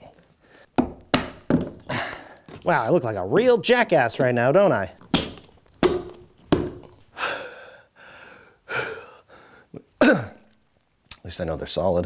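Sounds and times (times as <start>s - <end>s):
hammer knocking on nail: 0.8s - 1.8s, 5.0s - 7.0s
man breathing hard and gasping: 7.1s - 10.3s.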